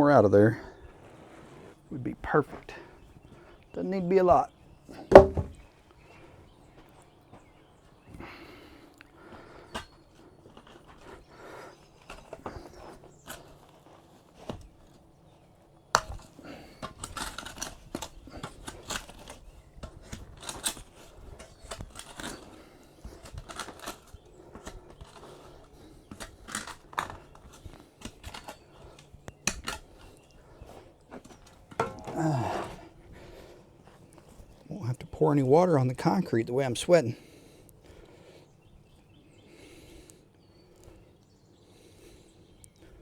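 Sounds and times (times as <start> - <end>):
scraping and crunching soil: 0.5 - 40.9
sharp knock: 5.1 - 5.6.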